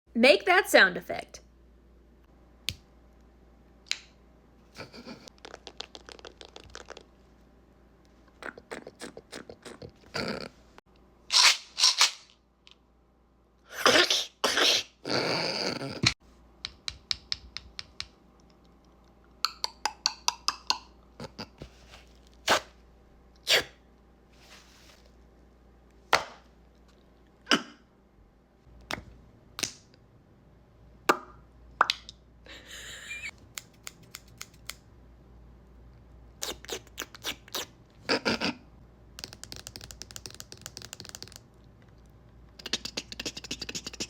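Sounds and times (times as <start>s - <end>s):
tongue clicks: 33.5s - 34.8s, 39.2s - 41.4s, 42.6s - 44.0s.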